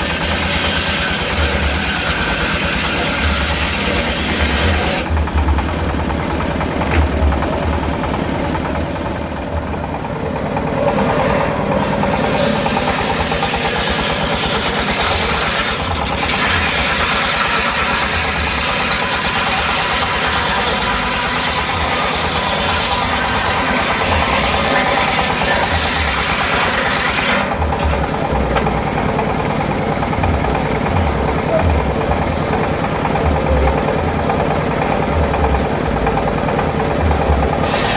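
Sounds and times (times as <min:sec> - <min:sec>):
brighter noisy sawing sound: 0:00.0 - 0:37.9
sawmill engine running: 0:00.0 - 0:37.9.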